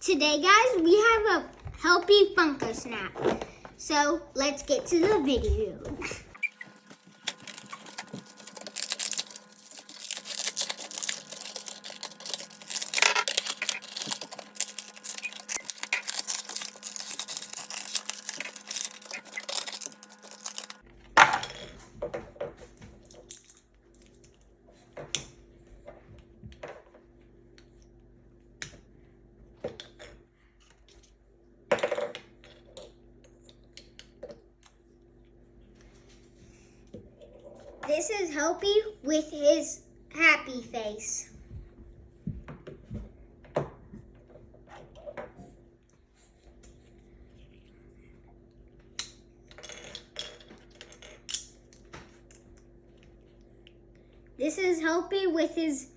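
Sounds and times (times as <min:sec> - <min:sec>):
plastic and cardboard packaging crinkling: 0:06.4 - 0:20.8.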